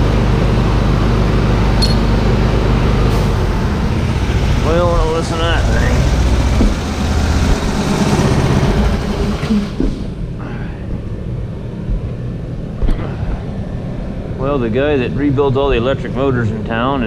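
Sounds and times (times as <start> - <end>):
air compressor rumbling: 0.0 - 17.0
sharp click: 1.8 - 2.2.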